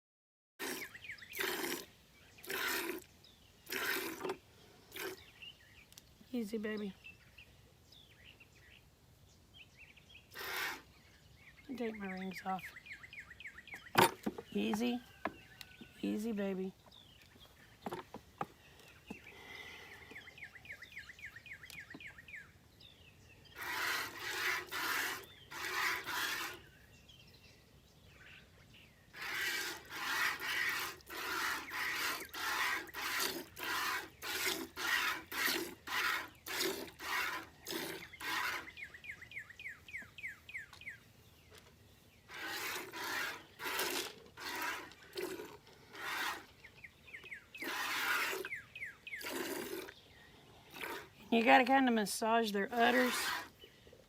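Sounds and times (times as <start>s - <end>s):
milk squirting into a pail: 0.6s - 5.2s, 29.2s - 38.7s, 42.3s - 46.5s, 47.6s - 48.6s, 49.2s - 50.0s, 50.7s - 51.2s.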